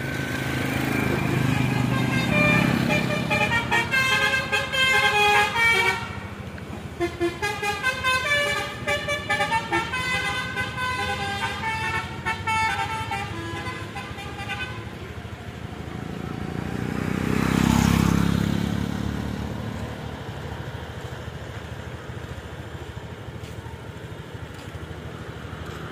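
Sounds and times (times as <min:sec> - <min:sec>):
vehicle passing close by: 0:00.0 - 0:05.6, 0:14.8 - 0:21.4
steady traffic rumble: 0:00.0 - 0:25.9
bus horn playing a melody: 0:00.6 - 0:15.3.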